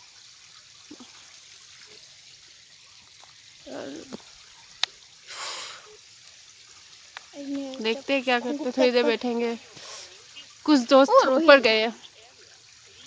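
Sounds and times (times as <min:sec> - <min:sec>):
faint waterfall rushing: 0:03.6 - 0:06.0, 0:06.7 - 0:13.0.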